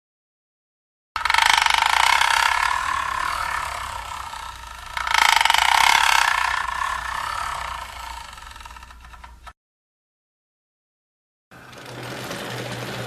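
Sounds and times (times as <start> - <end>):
milling machine cutting metal: 1.2 - 9.5, 11.6 - 13.0.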